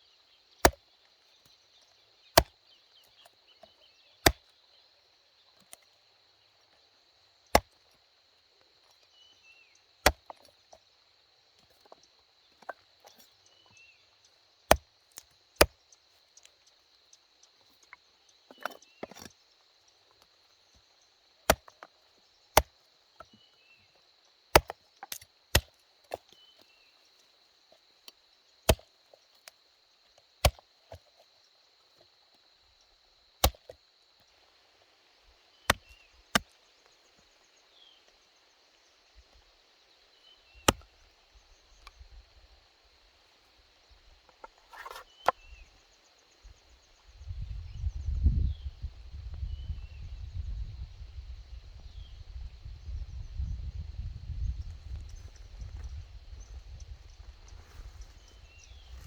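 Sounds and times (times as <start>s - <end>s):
chopping strikes: 33.4s - 33.7s.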